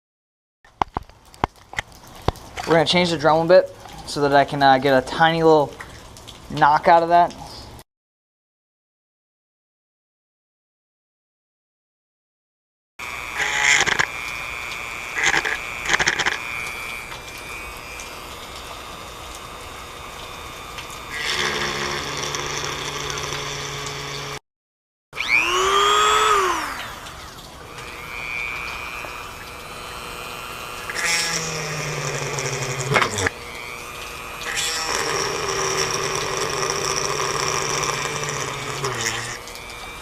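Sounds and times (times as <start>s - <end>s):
electric drill whining: 13.0s - 24.4s, 25.2s - 40.0s.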